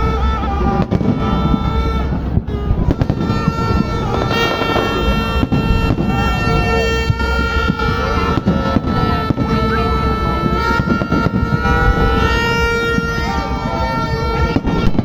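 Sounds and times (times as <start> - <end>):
blaring horn tones: 0.0 - 15.0
crowd voices: 0.0 - 15.0
low rumble: 0.0 - 15.0
sharp bangs: 0.0 - 15.0.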